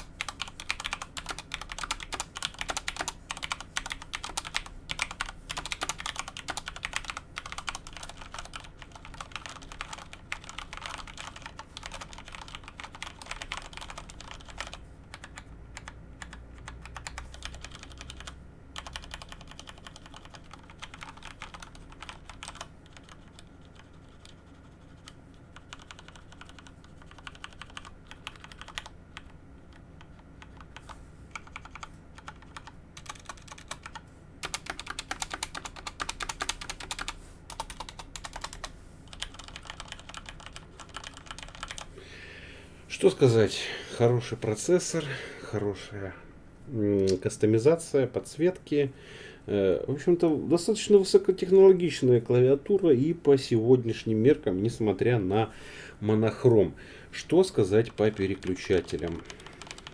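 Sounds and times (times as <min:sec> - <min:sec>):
mechanical keyboard typing: 0:00.0 - 0:41.9, 0:57.6 - 0:59.9.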